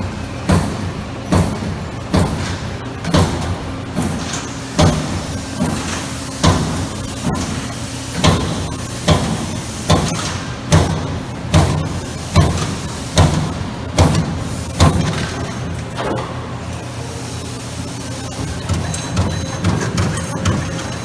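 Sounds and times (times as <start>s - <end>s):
punch press hitting sheet metal: 0.4s - 16.2s.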